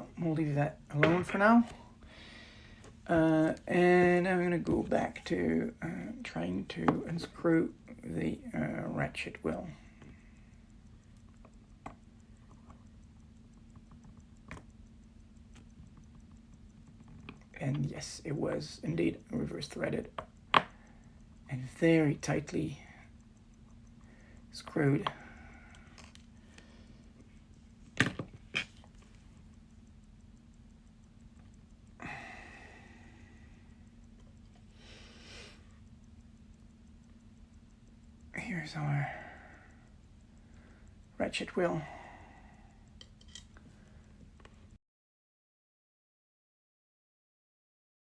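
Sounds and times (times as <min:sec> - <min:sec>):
steady low hum: 0:00.0 - 0:44.8
watchmaker's tools clicking: 0:09.3 - 0:32.4, 0:42.8 - 0:44.6.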